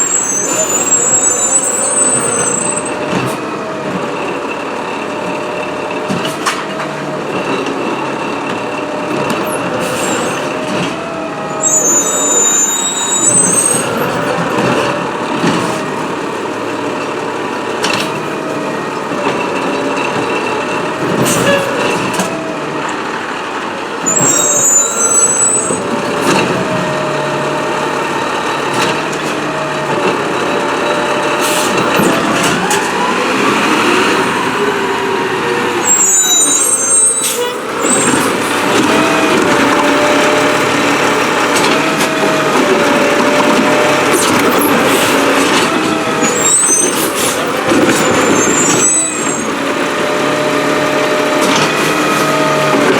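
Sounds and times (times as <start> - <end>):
high-pitched squeals: 0.0 - 5.6, 7.8 - 16.9, 24.0 - 51.4
truck engine and hydraulics: 0.0 - 52.9.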